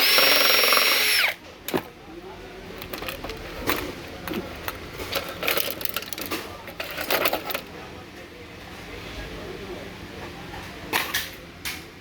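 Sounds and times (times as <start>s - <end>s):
tools clicking and rattling: 2.7s - 7.7s.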